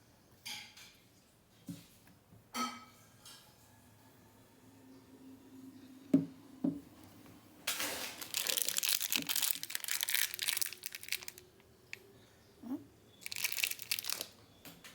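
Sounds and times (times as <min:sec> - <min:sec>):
packaging crinkling and tearing: 0:07.8 - 0:12.0, 0:13.2 - 0:14.4.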